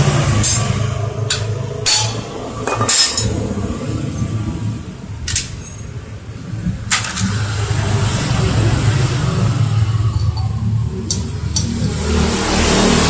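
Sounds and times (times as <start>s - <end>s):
metal tools clinking on engine parts: 0.4s - 3.4s, 10.1s - 11.8s.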